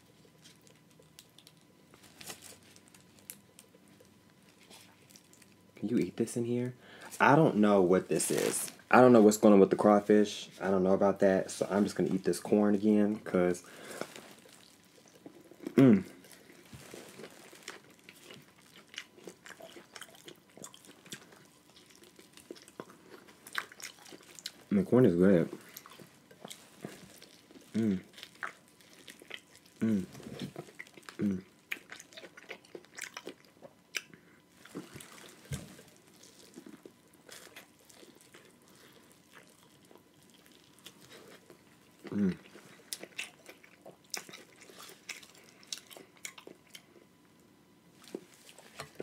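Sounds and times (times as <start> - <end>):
chewing corn on the cob: 13.8 - 47.1
falling voiced hum: 15.7 - 16.2, 27.7 - 28.2, 29.8 - 30.4, 31.2 - 31.5, 42.0 - 42.5.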